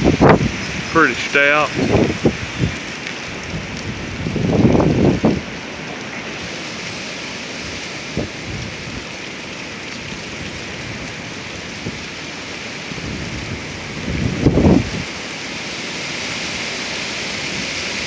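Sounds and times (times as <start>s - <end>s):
gusty wind rushing: 0.0s - 9.1s, 12.9s - 18.0s
wind buffeting microphone: 0.0s - 15.3s.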